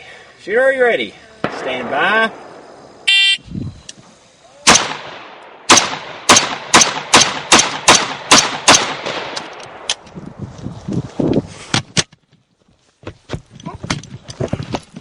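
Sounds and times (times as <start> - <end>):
rifle shots with echo: 1.4 - 3.0, 4.6 - 9.9.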